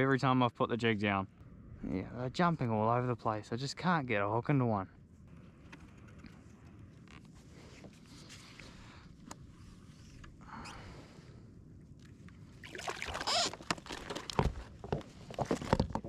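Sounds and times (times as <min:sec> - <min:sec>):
water lapping against kayak hull: 0:12.0 - 0:16.0.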